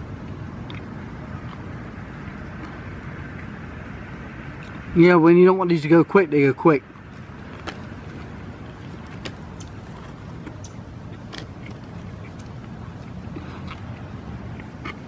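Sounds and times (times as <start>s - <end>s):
person chewing: 0.2s - 1.8s, 7.1s - 15.0s.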